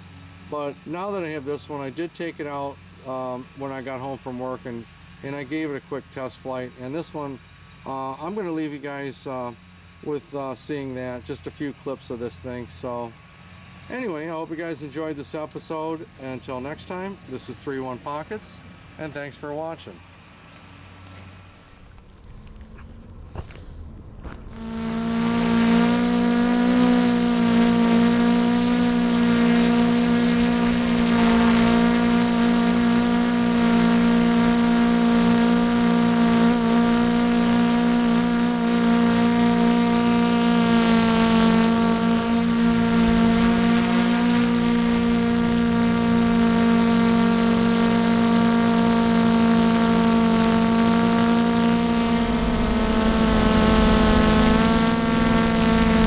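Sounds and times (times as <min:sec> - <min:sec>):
drone motors humming: 0:21.6 - 0:56.0.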